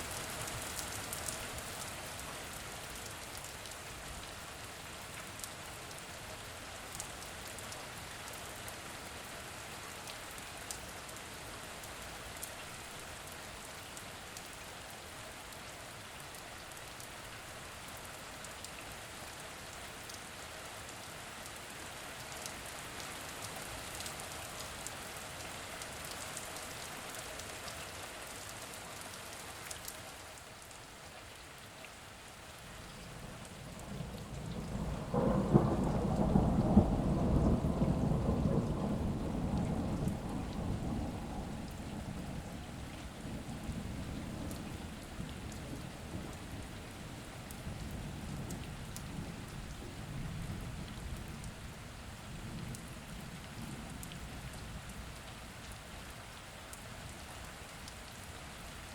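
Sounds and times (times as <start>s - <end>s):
steady rain falling: 0.0s - 58.9s
low rumble of thunder: 32.8s - 55.3s.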